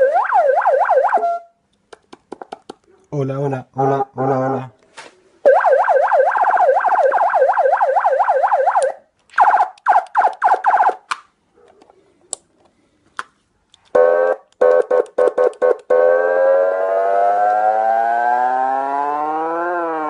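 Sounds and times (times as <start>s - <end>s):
choppy siren bursts: 0.0s - 1.5s, 5.4s - 11.0s, 14.0s - 20.0s
electronic siren yelp: 0.0s - 1.5s, 5.4s - 11.0s, 14.0s - 20.0s.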